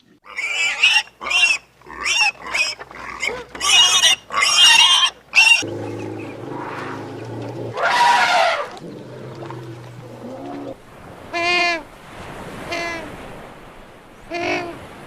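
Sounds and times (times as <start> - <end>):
animal squealing: 7.7 - 8.9
high bleat-like animal calls: 14.3 - 14.8.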